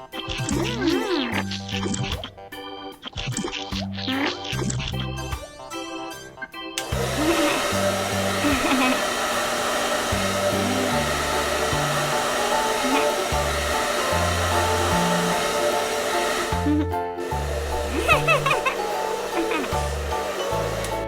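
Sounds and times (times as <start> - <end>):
background music with bass line: 0.0 - 7.3.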